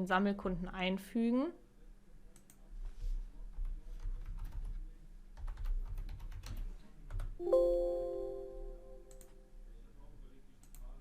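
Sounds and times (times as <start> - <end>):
typing on computer keyboard: 3.5 - 4.8, 5.4 - 7.4
short multi-tone chime: 7.4 - 9.1.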